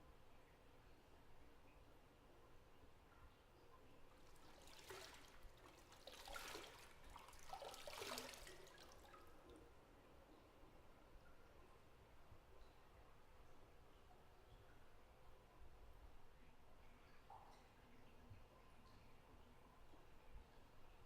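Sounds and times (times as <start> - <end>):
bathwater sloshing and dripping: 3.9 - 9.7.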